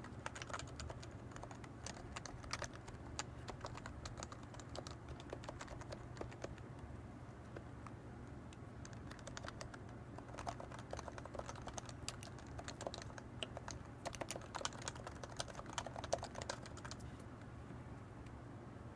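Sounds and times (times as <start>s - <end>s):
keyboard typing: 0.0s - 6.7s, 8.8s - 17.0s.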